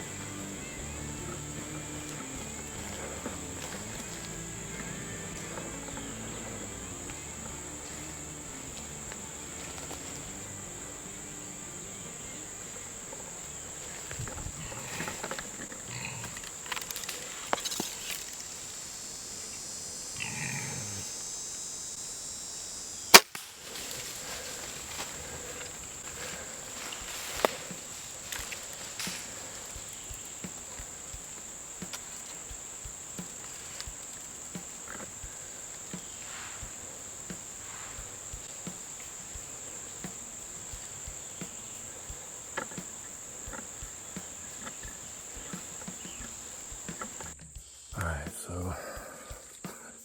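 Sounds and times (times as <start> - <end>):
hog call: 0.0 - 22.0
insects chirring: 0.0 - 50.0
bow shot snap: 23.1 - 25.7.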